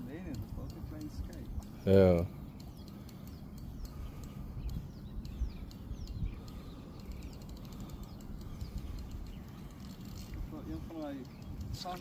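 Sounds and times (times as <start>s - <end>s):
birds chirping: 0.0s - 12.0s
fast faint ticks: 0.0s - 12.0s.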